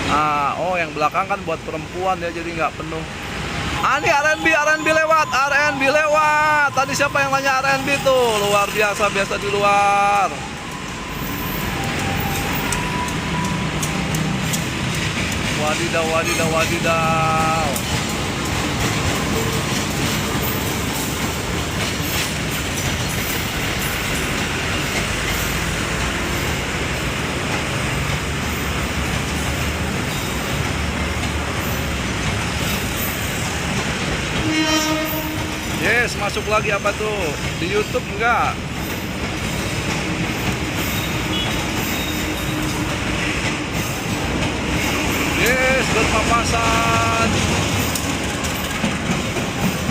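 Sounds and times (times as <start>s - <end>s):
train rumble and rail noise: 0.0s - 49.9s
sharp clicks: 11.8s - 15.6s.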